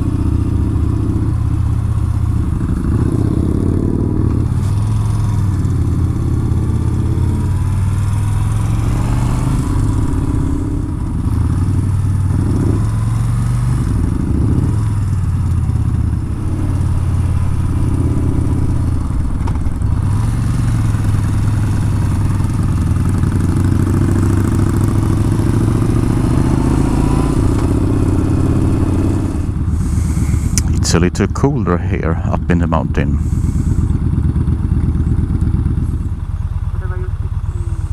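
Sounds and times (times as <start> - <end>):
motorcycle engine while riding: 0.0 - 37.9.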